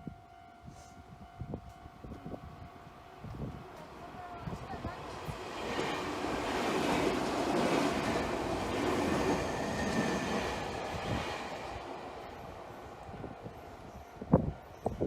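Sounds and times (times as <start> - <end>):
train wheels on rails: 3.2 - 15.0.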